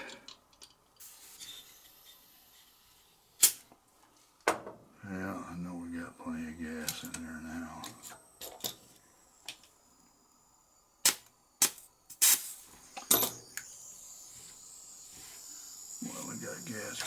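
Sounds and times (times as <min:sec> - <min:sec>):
high hiss of gas escaping: 0:01.0 - 0:03.7, 0:05.1 - 0:17.0
torch lighter clicking: 0:03.4 - 0:03.7, 0:11.0 - 0:16.8.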